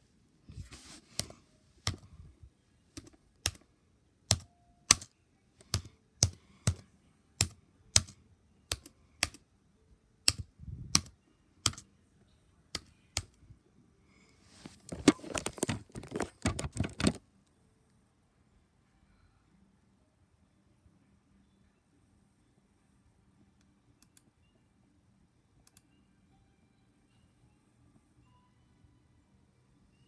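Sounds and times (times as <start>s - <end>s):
mechanical keyboard keystrokes: 1.2s - 2.1s, 4.3s - 6.8s, 7.4s - 9.4s, 10.3s - 11.1s, 14.9s - 17.2s.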